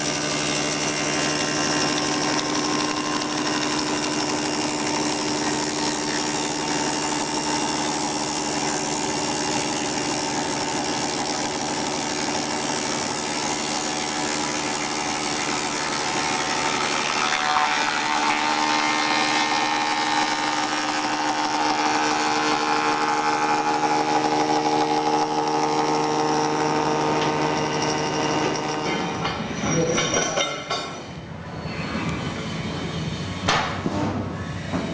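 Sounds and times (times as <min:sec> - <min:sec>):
milling machine cutting wood: 0:00.0 - 0:30.8.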